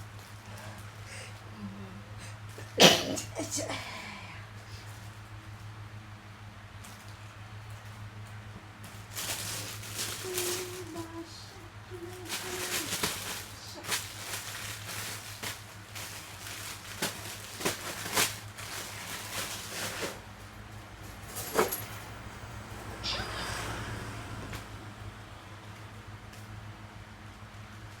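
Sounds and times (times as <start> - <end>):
low electrical hum: 0.0 - 28.0
rustling and handling noises: 4.5 - 22.9.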